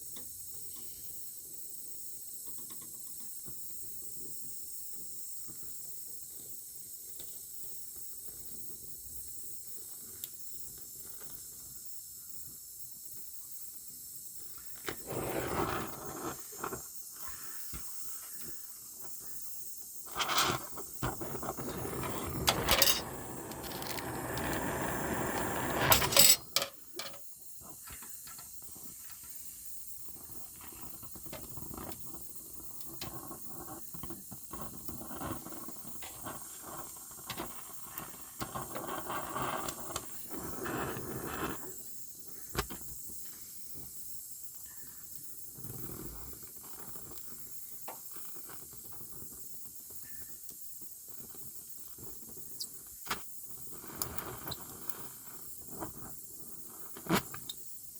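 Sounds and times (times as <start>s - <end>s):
scattered ticks and crackles: 0.0s - 25.9s, 26.6s - 57.9s
welding crackling hiss: 13.9s - 44.3s, 45.1s - 57.9s.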